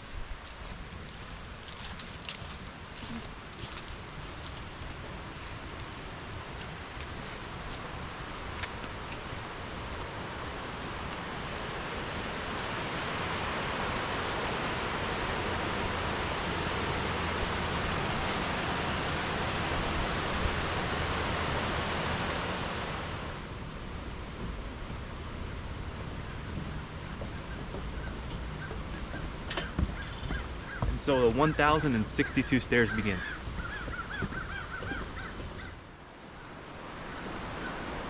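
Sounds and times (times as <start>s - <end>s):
waterfall rushing: 8.9s - 23.6s, 25.5s - 35.6s.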